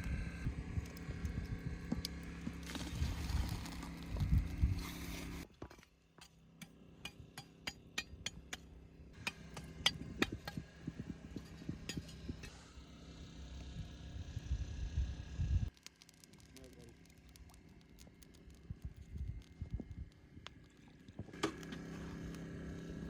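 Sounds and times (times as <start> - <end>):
low steady rumble: 0.0 - 5.5, 8.3 - 23.0.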